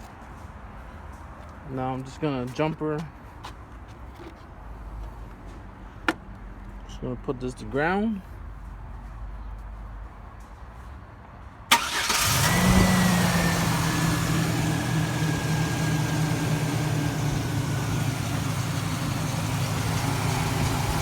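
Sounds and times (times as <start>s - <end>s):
truck engine cranking and idling: 11.7s - 21.0s.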